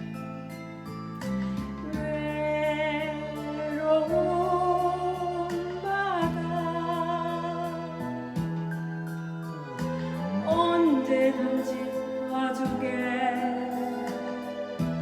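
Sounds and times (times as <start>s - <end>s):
backing track with steady beat: 4.0s - 15.0s.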